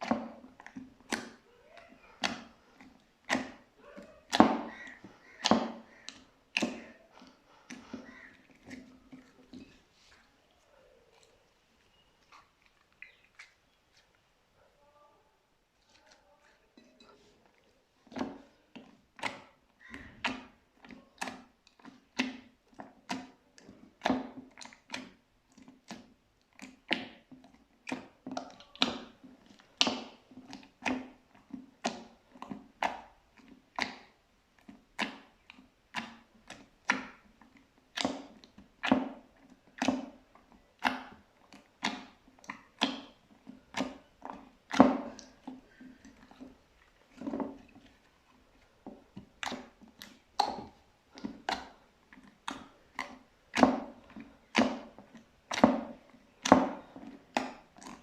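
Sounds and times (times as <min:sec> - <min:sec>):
slime squishing and popping: 0:49.1 - 0:58.0.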